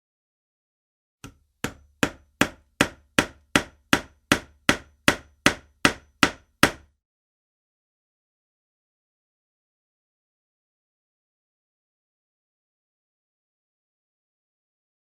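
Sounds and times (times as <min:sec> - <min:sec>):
hammer striking: 0:01.2 - 0:06.9.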